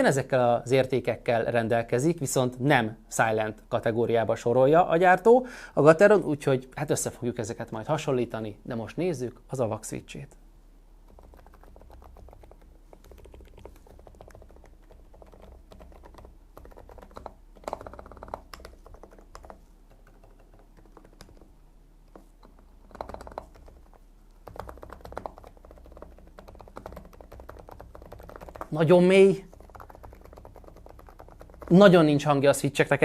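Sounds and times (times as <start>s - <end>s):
muffled mechanical keyboard typing: 11.1s - 21.5s, 22.1s - 32.2s.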